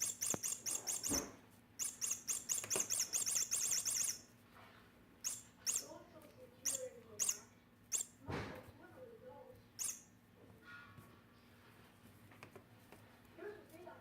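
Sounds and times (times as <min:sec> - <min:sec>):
cat toy chirping: 0:00.0 - 0:04.3, 0:05.2 - 0:06.0, 0:06.6 - 0:08.2, 0:09.8 - 0:10.1.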